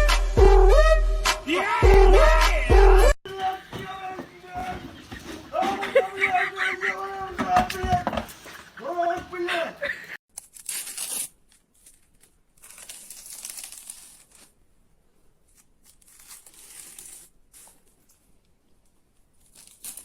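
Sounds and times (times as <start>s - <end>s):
rustling crinkling: 10.3s - 20.0s.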